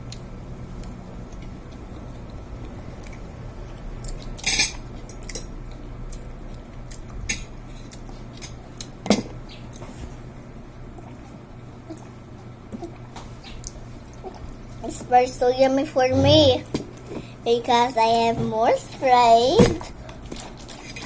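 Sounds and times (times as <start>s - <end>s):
low steady hum: 0.0s - 20.8s
cutlery and dishes clinking: 4.4s - 5.5s.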